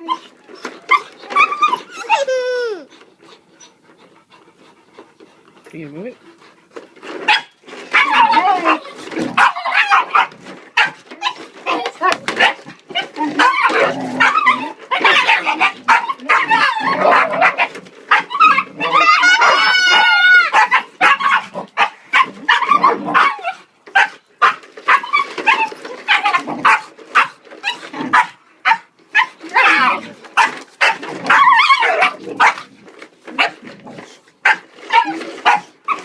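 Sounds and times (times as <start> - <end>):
high-pitched puppy whine: 0.0 - 3.9, 12.9 - 21.4, 29.2 - 30.1, 31.2 - 32.2
puppy barking and growling: 7.2 - 36.0.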